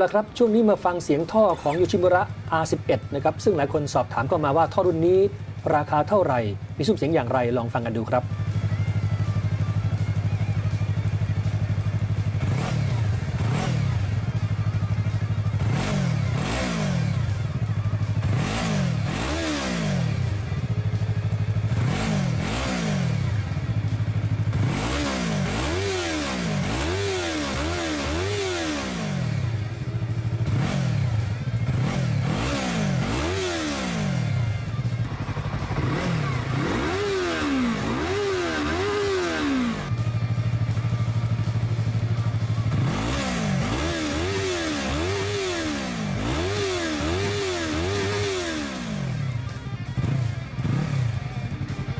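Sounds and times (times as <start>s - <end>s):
motorcycle idling and revving: 0.0s - 51.9s.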